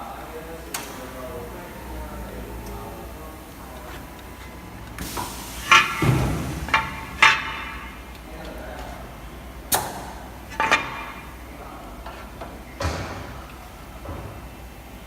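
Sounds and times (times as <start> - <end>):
sharp clacks and knocks: 5.6 - 8.6, 9.7 - 11.4.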